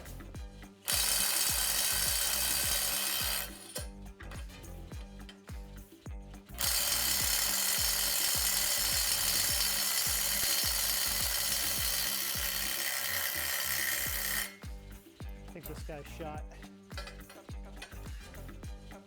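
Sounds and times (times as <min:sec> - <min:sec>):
background music with steady beat: 0:00.0 - 0:19.0
impact driver hammering on nut: 0:00.9 - 0:03.9, 0:06.6 - 0:14.6.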